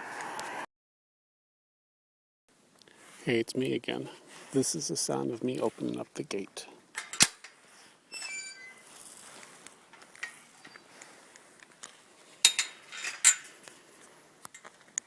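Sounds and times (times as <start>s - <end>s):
metal gate clanking and rattling: 7.0s - 8.9s, 12.4s - 13.6s
gate squeaking: 8.1s - 8.9s.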